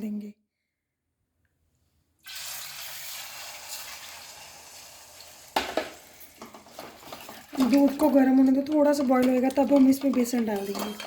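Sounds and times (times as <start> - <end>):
milk sizzling in hot ghee: 2.2 - 11.0.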